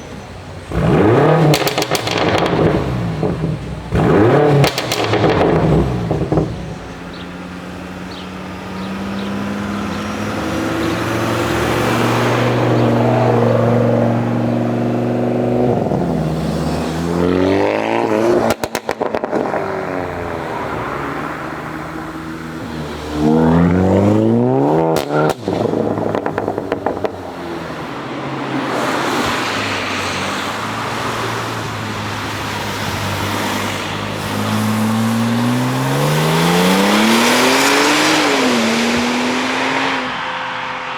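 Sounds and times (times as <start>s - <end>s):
car engine revving: 0.0s - 40.9s
rapid exhaust pops: 1.4s - 7.2s, 18.4s - 19.6s, 25.0s - 27.4s.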